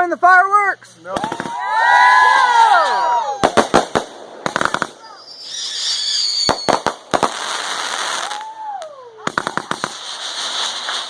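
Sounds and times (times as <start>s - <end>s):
firework cracks: 1.1s - 2.2s, 3.3s - 11.0s
firework whistling: 1.1s - 11.0s
firework crackling hiss: 3.4s - 11.0s
falling whistle: 5.2s - 6.8s.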